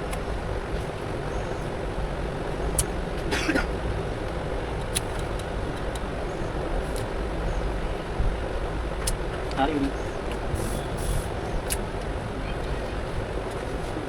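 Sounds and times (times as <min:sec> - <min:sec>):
background hum and hiss: 0:00.0 - 0:14.0.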